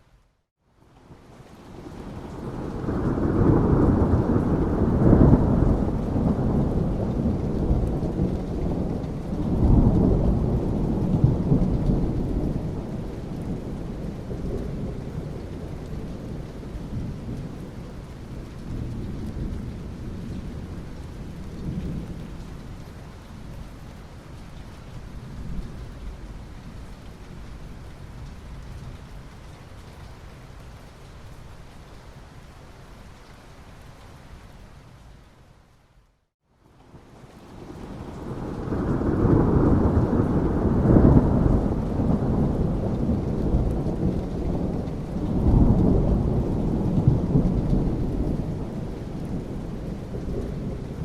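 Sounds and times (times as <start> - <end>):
steady rain: 0.0 - 51.0
thunder rumbling: 1.8 - 22.5, 37.5 - 51.0.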